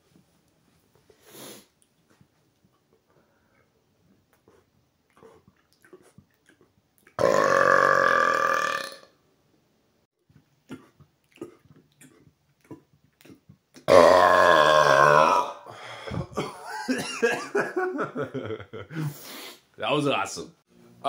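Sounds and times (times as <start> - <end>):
man burping loudly: 7.2 - 9.1, 13.8 - 15.7.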